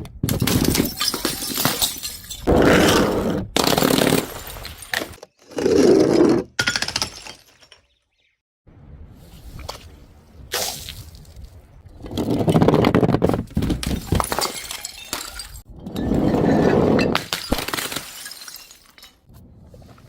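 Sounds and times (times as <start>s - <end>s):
glass bottles smashing: 0.4s - 2.5s, 3.6s - 5.2s, 6.6s - 7.9s, 13.6s - 16.2s, 17.0s - 19.3s.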